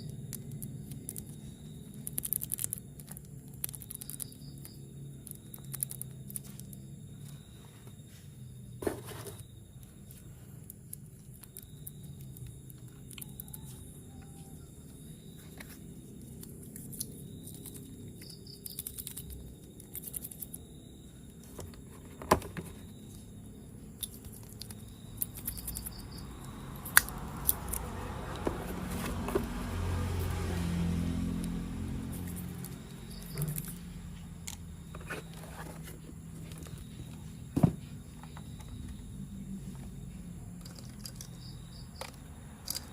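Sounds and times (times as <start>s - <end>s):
plastic toy parts clicking: 2.0s - 4.4s, 42.0s - 42.9s.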